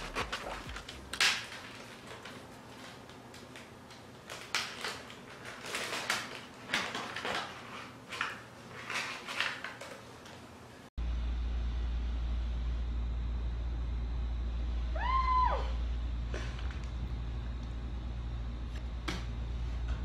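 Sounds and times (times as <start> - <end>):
playing cards clicking and rustling: 0.0 - 10.4.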